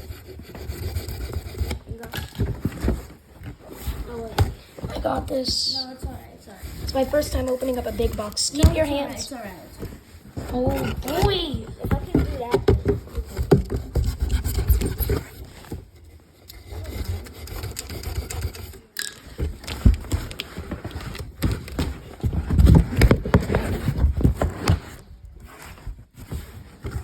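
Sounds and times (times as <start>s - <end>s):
cardboard box being handled: 0.1s - 17.8s, 19.5s - 27.0s.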